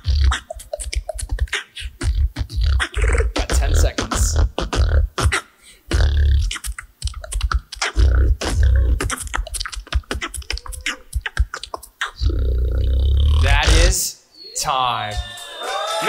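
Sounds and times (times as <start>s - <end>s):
mouth clicks: 0.0s - 14.0s
beatboxing into a microphone: 0.0s - 14.1s.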